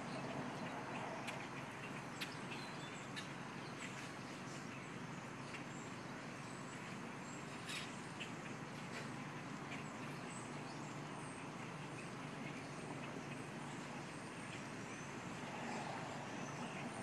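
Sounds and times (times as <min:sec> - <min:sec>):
flock of birds calling: 0:00.0 - 0:17.0.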